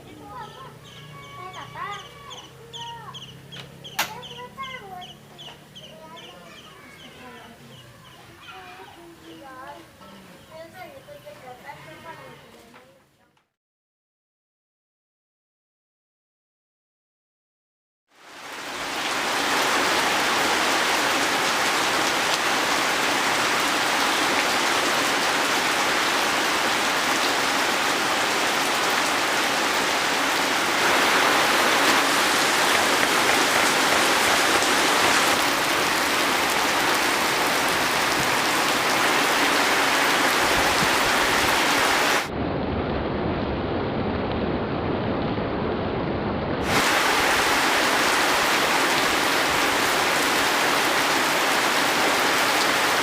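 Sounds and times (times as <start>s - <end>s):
heavy rain falling: 18.1s - 42.4s, 46.6s - 53.0s.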